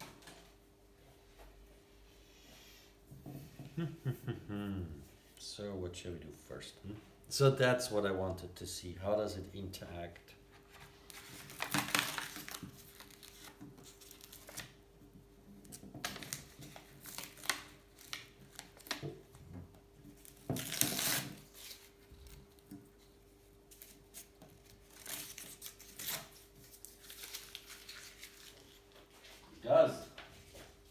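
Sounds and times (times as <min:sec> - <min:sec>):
paper crumpling: 0:10.6 - 0:14.8, 0:16.0 - 0:19.0, 0:20.2 - 0:23.1, 0:23.7 - 0:29.4
masking tape peeling: 0:20.2 - 0:22.0, 0:23.7 - 0:28.8.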